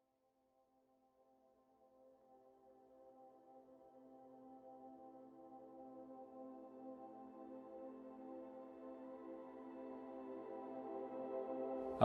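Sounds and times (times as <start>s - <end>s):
ambient synth pad music: 2.0s - 12.0s.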